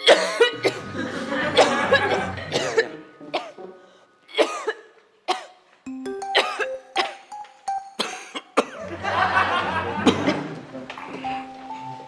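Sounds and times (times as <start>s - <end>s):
person coughing harshly: 0.0s - 3.6s, 4.3s - 5.6s, 6.4s - 7.2s, 8.0s - 8.9s, 10.0s - 10.5s
musical notes: 5.8s - 10.2s, 11.1s - 12.0s.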